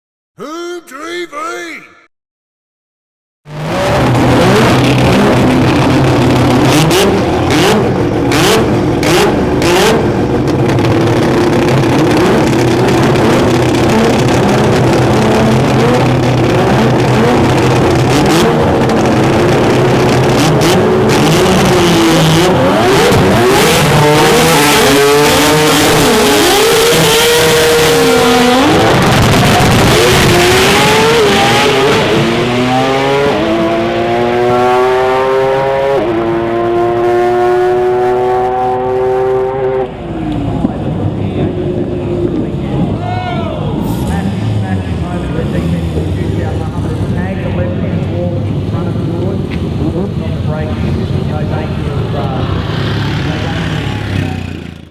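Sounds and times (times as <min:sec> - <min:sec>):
rotary engine revving: 0:03.5 - 0:43.0, 0:43.8 - 0:54.9.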